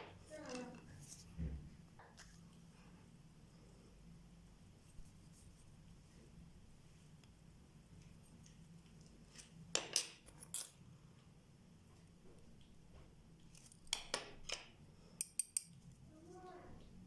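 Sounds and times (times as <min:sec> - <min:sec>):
small metal parts clinking: 0:09.8 - 0:10.8.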